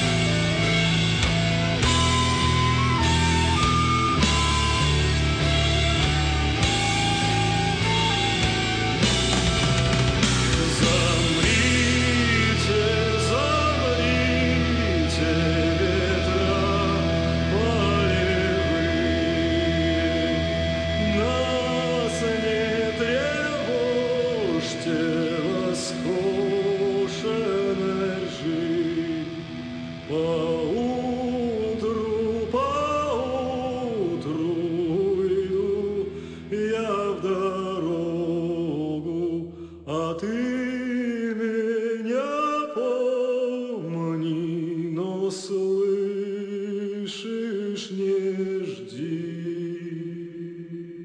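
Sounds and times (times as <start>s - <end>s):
low held drone: 0.0s - 37.2s
man singing with vibrato: 0.0s - 51.0s.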